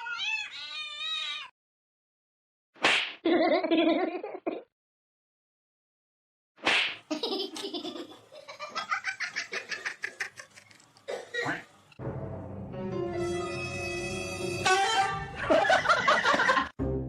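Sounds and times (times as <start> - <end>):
music: 12.0 - 15.9, 16.7 - 17.0
hearty laughter: 15.4 - 16.8.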